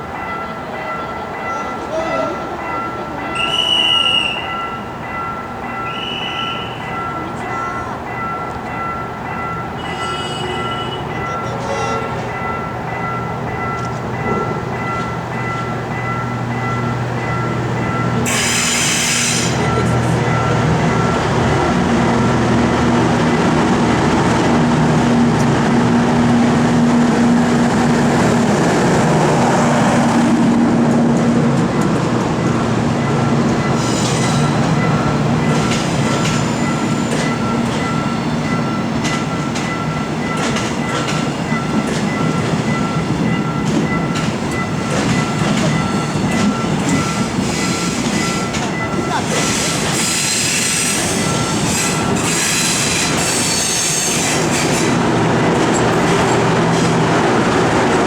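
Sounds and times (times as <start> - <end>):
level crossing warning bell: 0.0 - 30.4, 31.2 - 58.0
passing train rumble and hum: 0.0 - 58.0.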